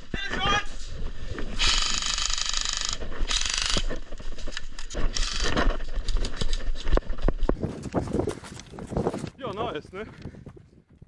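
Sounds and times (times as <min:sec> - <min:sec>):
airsoft rifle bursts: 0:01.6 - 0:03.9
clicks and knocks of gear: 0:01.6 - 0:09.3.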